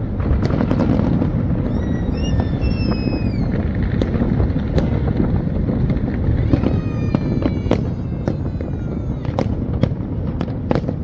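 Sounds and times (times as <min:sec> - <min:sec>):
rumble of firework bursts: 0:00.0 - 0:11.0
sharp firework cracks: 0:00.0 - 0:11.0
falling whistling tone: 0:01.6 - 0:03.6.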